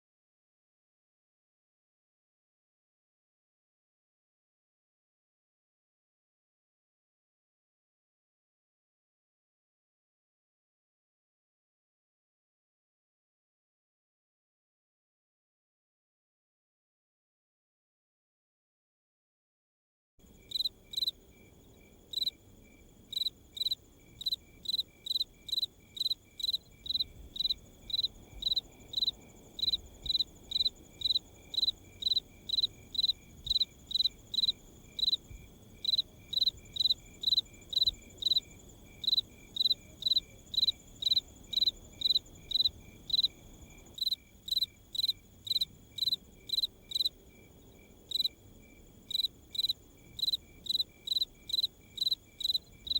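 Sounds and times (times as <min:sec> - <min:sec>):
crickets chirping: 0:20.3 - 0:52.9.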